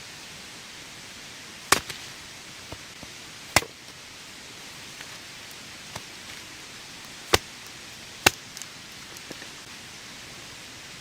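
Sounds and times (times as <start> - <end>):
rain falling in a forest: 0.0 - 11.0.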